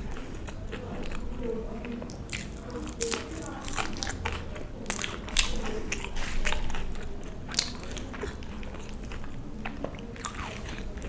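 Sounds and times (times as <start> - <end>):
person chewing food: 0.0 - 11.0.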